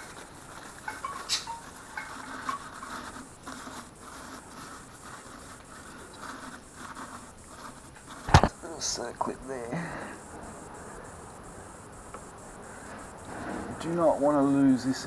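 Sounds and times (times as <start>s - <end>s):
faint scraping and tapping: 0.0s - 9.3s
sharp click: 8.3s - 8.5s.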